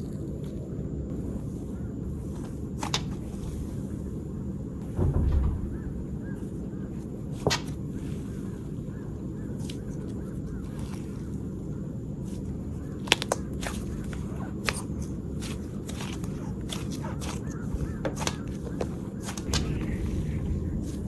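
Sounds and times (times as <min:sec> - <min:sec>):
steady low rumble: 0:00.6 - 0:09.4, 0:19.4 - 0:21.0
slime squishing: 0:13.0 - 0:21.0.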